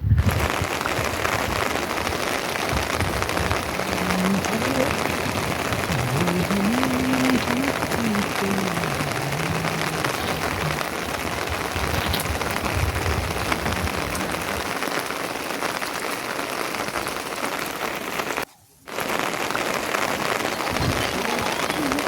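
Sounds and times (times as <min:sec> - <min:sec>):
steady rain falling: 0:00.0 - 0:22.0.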